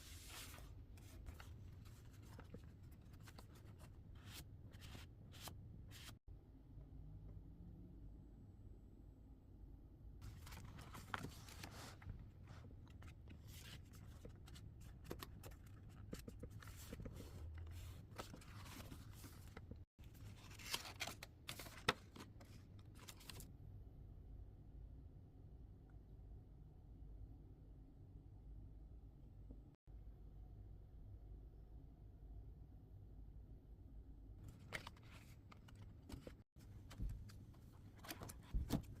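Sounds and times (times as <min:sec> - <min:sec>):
rustling and scraping of paper: 0:00.0 - 0:06.2, 0:10.2 - 0:23.5, 0:34.4 - 0:39.0.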